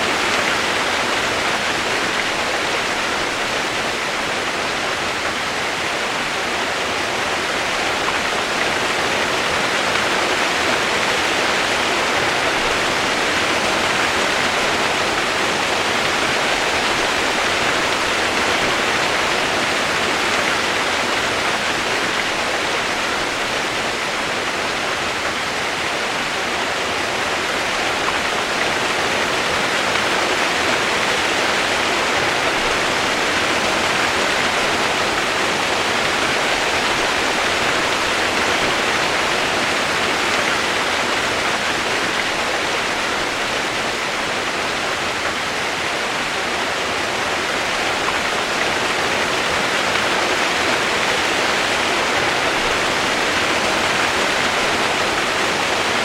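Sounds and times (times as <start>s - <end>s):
rain-like white noise: 0.0s - 56.0s.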